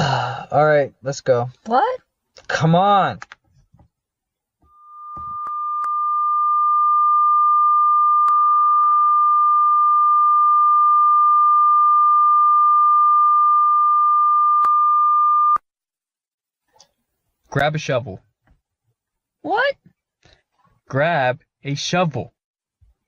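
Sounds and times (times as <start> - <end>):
high electronic tone: 4.7 - 15.6.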